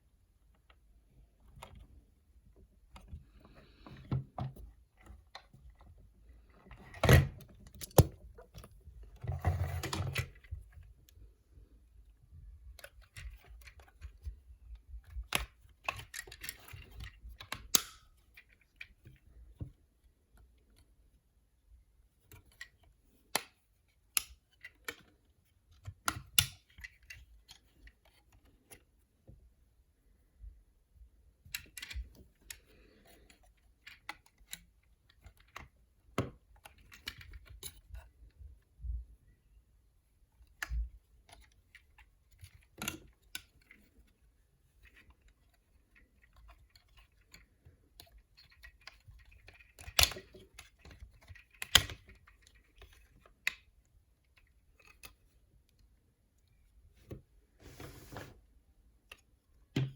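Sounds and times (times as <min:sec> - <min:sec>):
plastic toy clicks and taps: 0:15.2 - 0:18.0.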